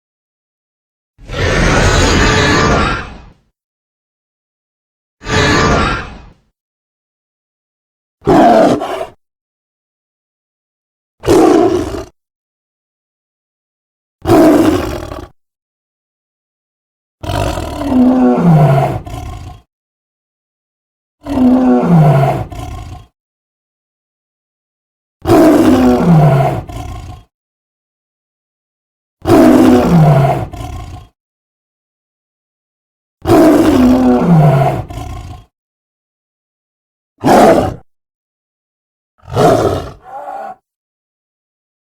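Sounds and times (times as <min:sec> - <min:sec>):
dragon roars: 0:01.2 - 0:03.4, 0:05.2 - 0:06.4, 0:08.2 - 0:09.2, 0:11.2 - 0:12.2, 0:14.3 - 0:15.3, 0:17.2 - 0:19.7, 0:21.2 - 0:23.1, 0:25.3 - 0:27.3, 0:29.2 - 0:31.2, 0:33.3 - 0:35.5, 0:37.2 - 0:37.9, 0:39.2 - 0:40.7.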